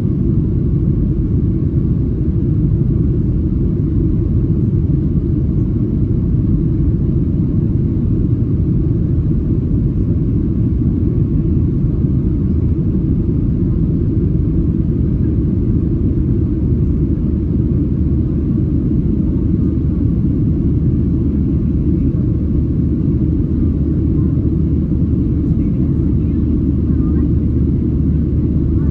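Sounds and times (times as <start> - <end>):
airplane cabin engine rumble: 0.0 - 28.9.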